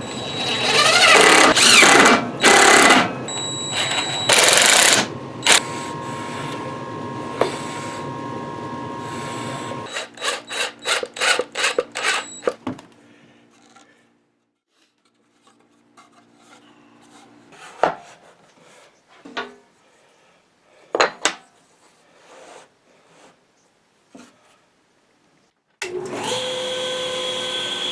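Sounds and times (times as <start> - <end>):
power tool running: 0.0 - 12.6, 25.9 - 27.9
rasping strokes on wood: 9.1 - 12.2.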